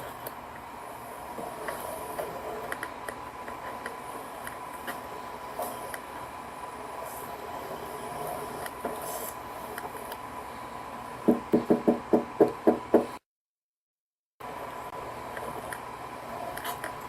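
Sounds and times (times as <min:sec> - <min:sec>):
steady hiss and faint hum: 0:00.0 - 0:13.2, 0:14.4 - 0:17.0
rapid knocking on a door: 0:11.2 - 0:13.2.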